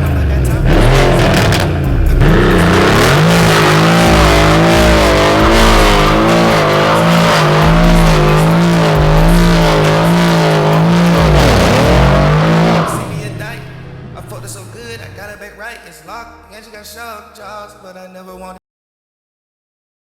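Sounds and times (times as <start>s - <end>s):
car engine revving through exhaust: 0.0s - 15.2s.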